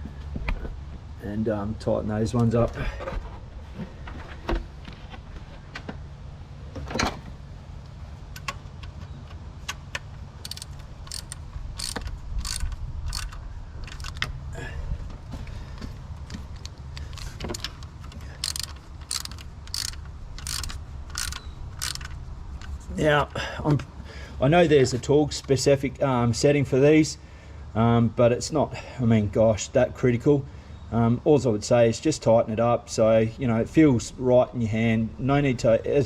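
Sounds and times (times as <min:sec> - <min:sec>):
socket ratchet clicking: 0:10.4 - 0:14.3, 0:16.3 - 0:22.8.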